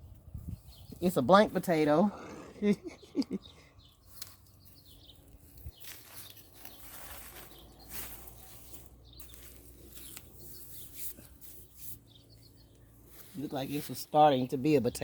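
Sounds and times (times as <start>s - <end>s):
hands digging through soil: 4.0s - 15.0s.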